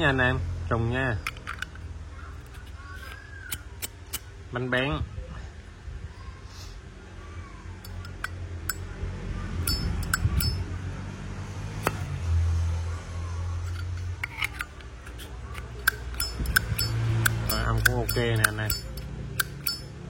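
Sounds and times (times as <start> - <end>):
lighter lid clicking open and shut: 14.2 - 19.9.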